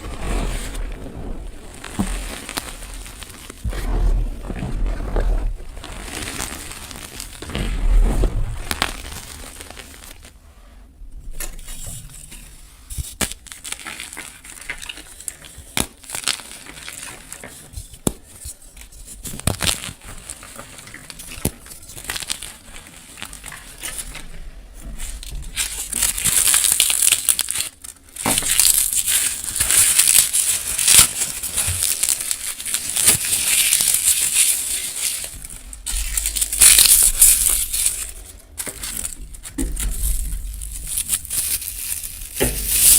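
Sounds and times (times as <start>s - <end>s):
chalk and dried flowers crunching: 25.0s - 42.9s.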